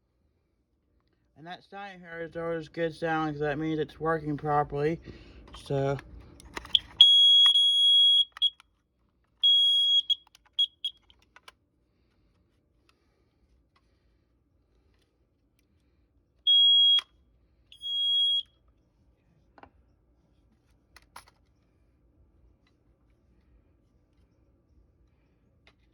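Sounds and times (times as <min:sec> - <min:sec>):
alarm beeping: 0:09.4 - 0:11.0, 0:16.5 - 0:17.0, 0:17.8 - 0:18.5.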